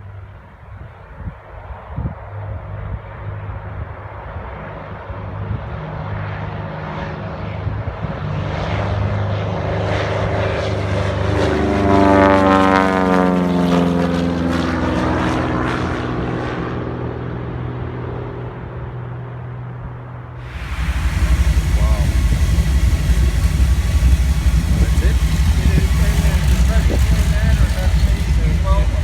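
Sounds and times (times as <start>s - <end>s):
propeller aircraft flying past: 4.4s - 19.4s, 20.4s - 29.0s.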